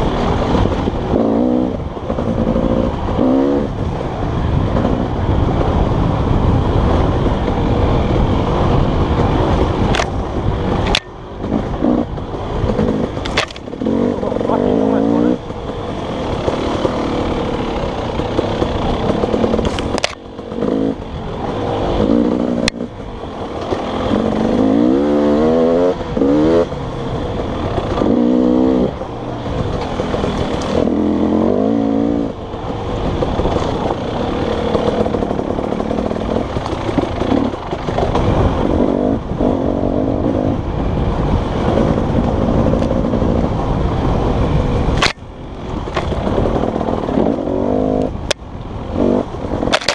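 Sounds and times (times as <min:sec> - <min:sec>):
dirt bike engine revving: 0:00.0 - 0:05.2, 0:06.8 - 0:43.8, 0:46.0 - 0:49.9
knocks and clatter from bike: 0:08.6 - 0:14.6, 0:15.4 - 0:24.8, 0:26.0 - 0:39.6, 0:41.1 - 0:49.9.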